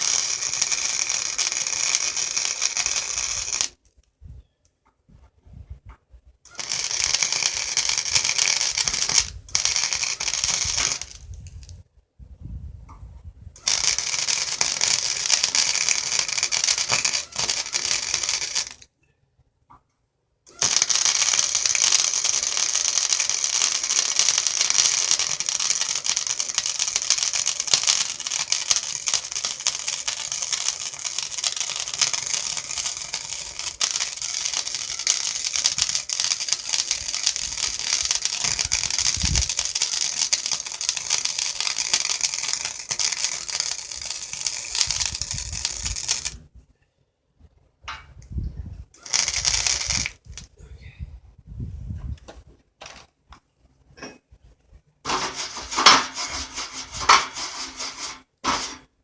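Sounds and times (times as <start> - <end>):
arc welding crackle: 0.0 - 3.8, 6.5 - 11.7, 13.6 - 18.9, 20.5 - 46.4, 49.0 - 50.5, 55.0 - 59.0.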